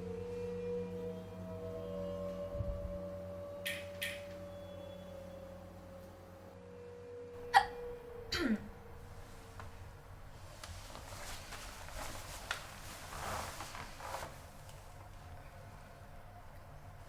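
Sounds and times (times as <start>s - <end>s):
faint held musical tone: 0.0s - 17.0s
person hiccuping: 7.5s - 8.7s.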